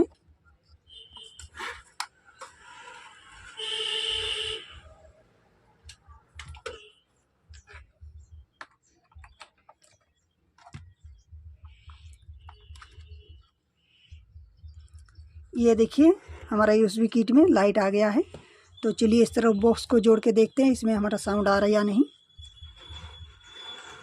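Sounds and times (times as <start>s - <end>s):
clicks and taps of handling wires: 5.8s - 6.8s, 8.5s - 13.5s.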